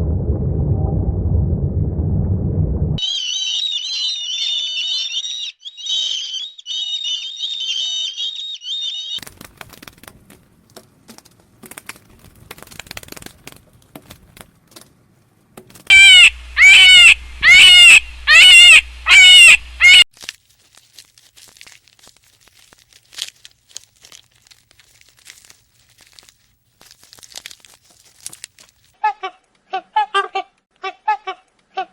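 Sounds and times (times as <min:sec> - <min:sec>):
birds twittering: 0:03.0 - 0:09.2, 0:15.9 - 0:20.0
harsh bird calls: 0:03.0 - 0:09.2, 0:15.9 - 0:20.0
rustling and light clicks: 0:20.1 - 0:29.6.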